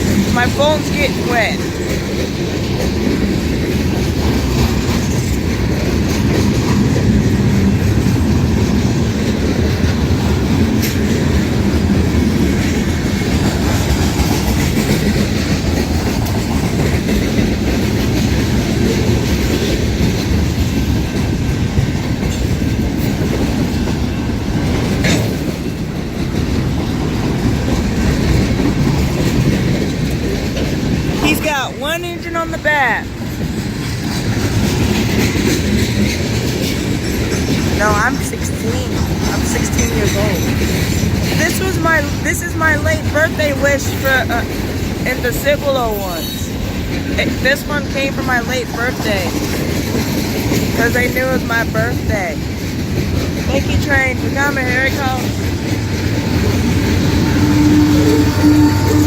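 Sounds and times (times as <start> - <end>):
freight train rumbling past: 0.0 - 59.0
wheels clacking over rails: 0.0 - 59.0.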